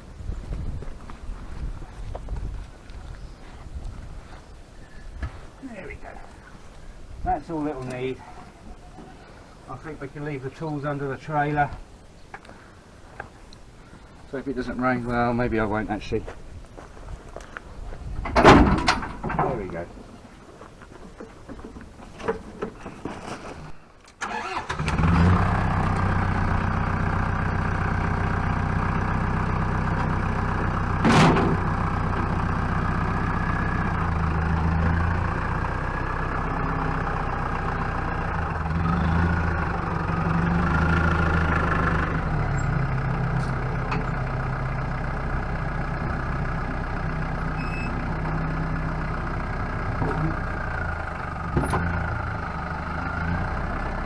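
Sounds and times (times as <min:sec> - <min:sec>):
vehicle engine starting and idling: 0:24.1 - 0:54.0.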